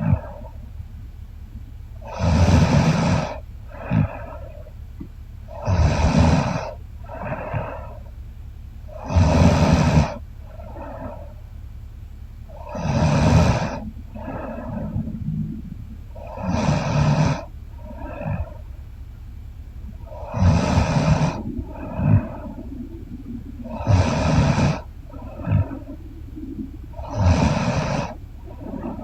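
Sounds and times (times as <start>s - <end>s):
soft breath: 5.5s - 8.2s, 8.9s - 11.6s, 12.5s - 18.9s, 19.8s - 29.0s
woman snoring: 20.2s - 21.4s, 27.0s - 28.2s.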